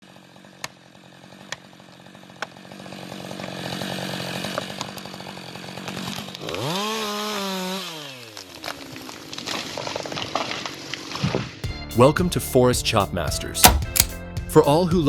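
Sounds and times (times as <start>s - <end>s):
chainsaw engine revving: 0.0s - 11.4s
sharp clicks: 13.6s - 14.2s.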